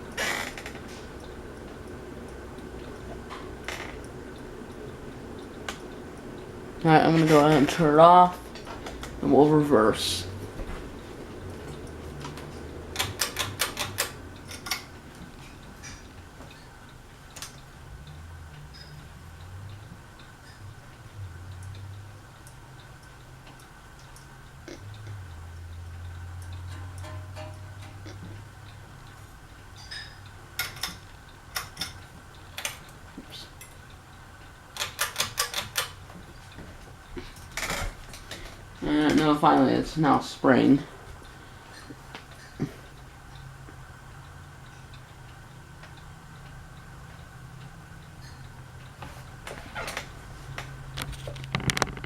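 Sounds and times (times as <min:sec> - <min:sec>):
ceiling fan switch clicks: 0:00.0 - 0:09.5, 0:10.2 - 0:29.1, 0:29.7 - 0:39.4.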